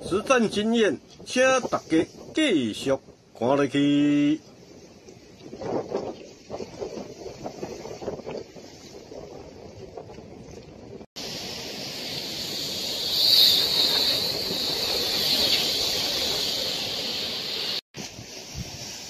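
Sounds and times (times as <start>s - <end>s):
sea surf washing on shore: 4.1s - 19.0s.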